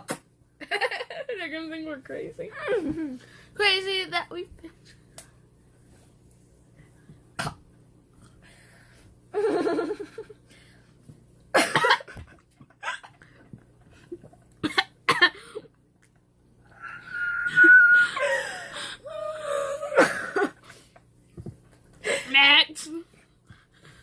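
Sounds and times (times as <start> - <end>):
girl coughing: 11.6 - 12.1, 14.6 - 15.4.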